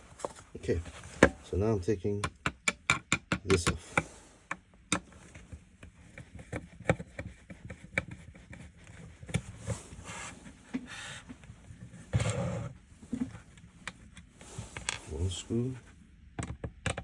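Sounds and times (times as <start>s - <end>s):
small plastic clicks and taps: 2.2s - 5.1s, 16.4s - 17.0s.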